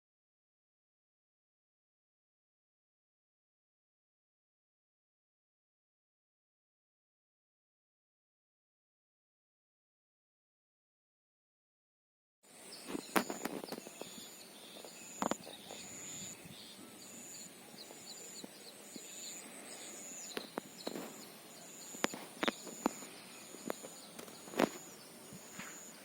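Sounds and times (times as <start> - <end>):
insect high whine: 12.5 - 26.0
faint bird chirps: 12.6 - 26.0
insect chirping in pulses: 12.7 - 26.0.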